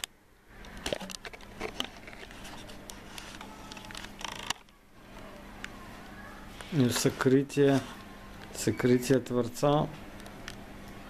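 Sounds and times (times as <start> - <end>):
small clicks and knocks: 0.0 - 5.8
steady low hum: 0.0 - 11.0.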